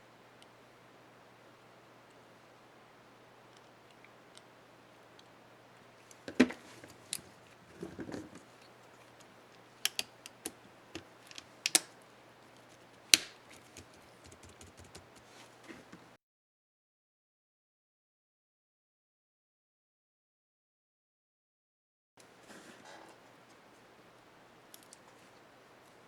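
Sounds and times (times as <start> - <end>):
plastic keycap clicks and snaps: 9.8 - 11.9.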